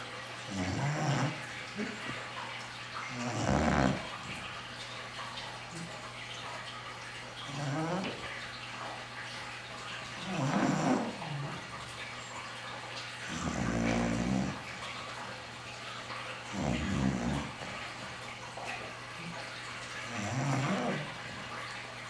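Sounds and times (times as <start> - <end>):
dog snoring: 0.5 - 2.1, 3.1 - 4.3, 7.5 - 8.3, 10.2 - 11.7, 13.2 - 14.8, 16.5 - 21.4.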